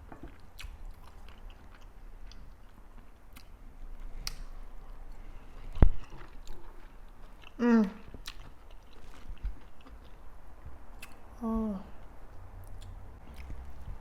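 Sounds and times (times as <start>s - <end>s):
chewing fish: 0.0s - 10.3s.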